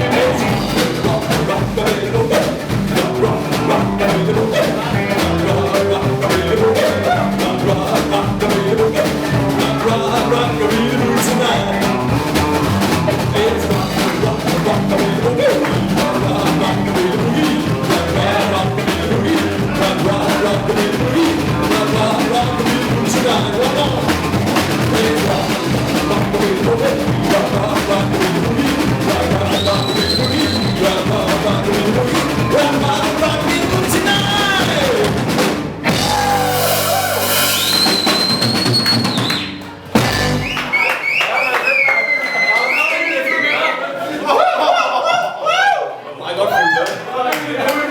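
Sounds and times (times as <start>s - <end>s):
drum kit steady beat: 0.0s - 40.8s
live band playing dance music: 0.0s - 41.4s.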